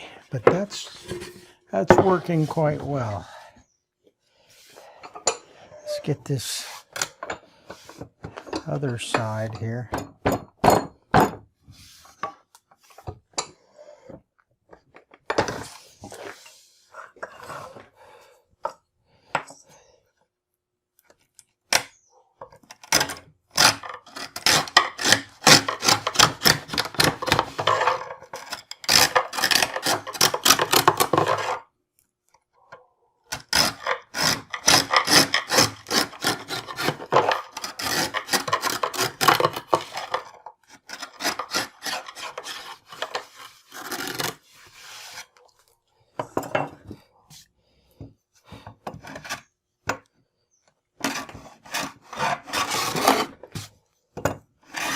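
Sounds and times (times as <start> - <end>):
hand tool scraping wood: 0.4 - 3.4, 4.5 - 10.2, 22.8 - 31.7, 33.3 - 45.5, 51.0 - 53.8, 54.6 - 54.9.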